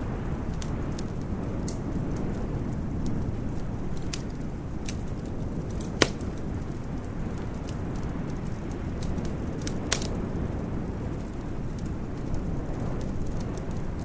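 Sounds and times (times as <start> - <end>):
wood fire crackling: 0.0 - 14.0
loud pop of fire: 3.9 - 6.8, 8.4 - 10.6.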